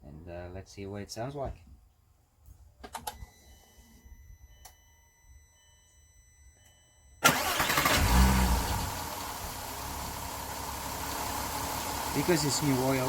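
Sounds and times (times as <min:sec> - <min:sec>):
car engine starting and idling: 0:07.2 - 0:13.0.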